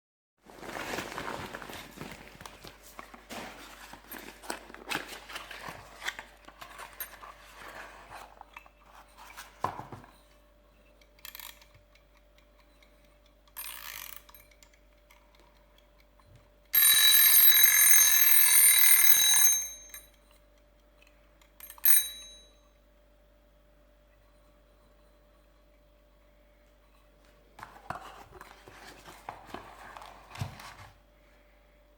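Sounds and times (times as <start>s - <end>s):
packaging rustling: 0.4s - 10.1s, 27.6s - 31.0s
small mechanical bell ringing: 13.5s - 14.7s, 16.7s - 20.3s, 21.6s - 22.8s.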